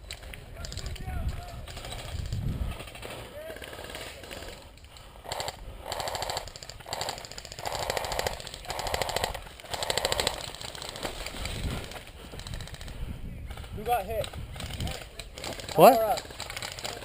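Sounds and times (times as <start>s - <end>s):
electric rifle full-auto bursts: 5.3s - 11.0s.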